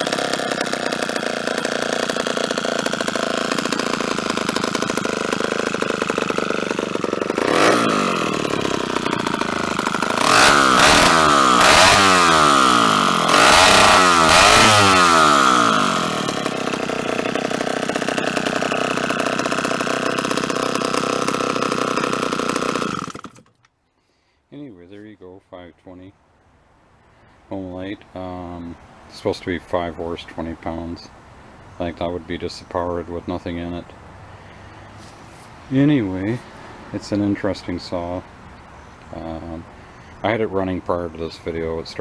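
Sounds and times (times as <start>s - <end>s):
chainsaw engine idling and revving: 0.0s - 23.7s, 33.0s - 38.3s.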